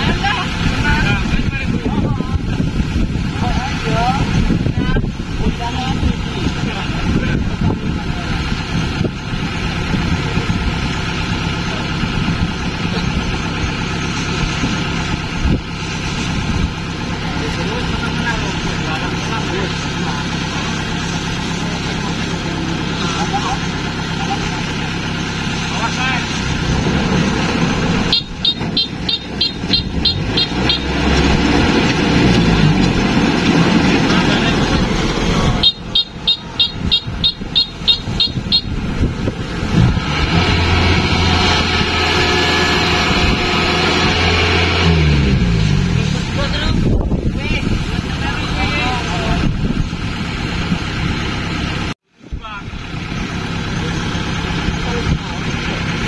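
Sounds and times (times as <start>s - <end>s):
diesel engine running: 0.0s - 56.0s
rapid electronic warning beep: 28.1s - 30.9s, 35.6s - 38.8s.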